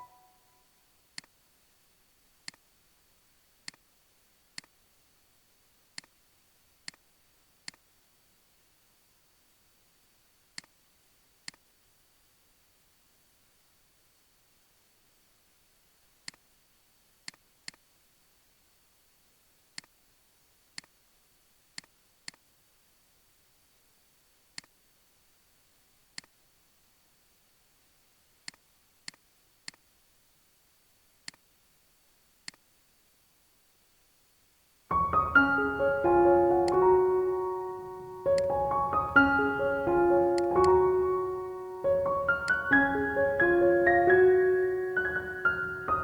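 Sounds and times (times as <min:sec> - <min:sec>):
piano music: 0:00.0 - 0:00.2, 0:34.9 - 0:46.0
computer mouse clicks: 0:02.4 - 0:02.6, 0:03.6 - 0:03.8, 0:06.8 - 0:07.0, 0:07.6 - 0:07.8, 0:11.4 - 0:11.6, 0:17.2 - 0:17.8, 0:28.4 - 0:29.8, 0:31.2 - 0:31.4, 0:32.4 - 0:32.6.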